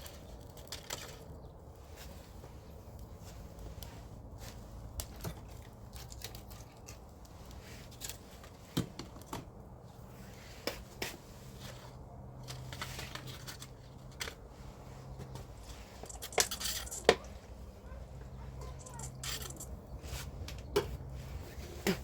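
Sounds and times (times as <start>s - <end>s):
twigs crackling and snapping: 0.0s - 8.6s, 15.1s - 17.3s, 18.7s - 19.8s.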